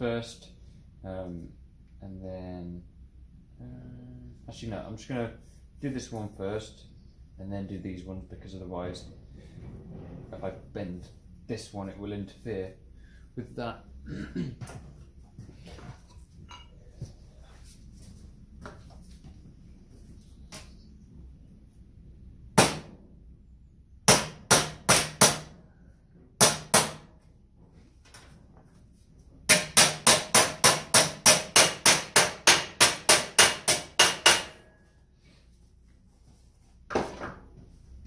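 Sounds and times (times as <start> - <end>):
hammer striking sheet metal: 22.6 - 23.0, 24.1 - 25.6, 26.4 - 27.1, 29.5 - 34.7.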